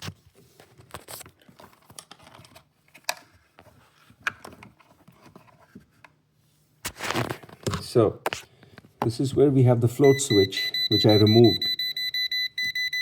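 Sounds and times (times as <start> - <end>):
clicks and rustles of plastic parts: 0.0 - 6.2.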